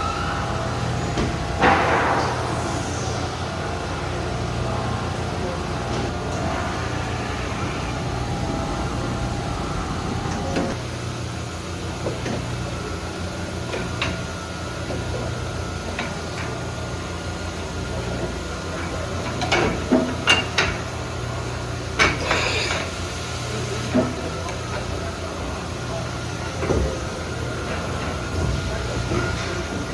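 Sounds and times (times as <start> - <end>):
machine humming: 0.0 - 10.9.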